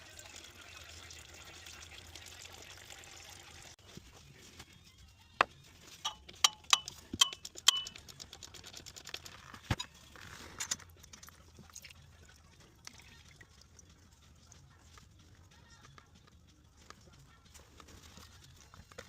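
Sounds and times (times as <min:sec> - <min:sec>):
metal tools clinking: 0:06.0 - 0:08.0.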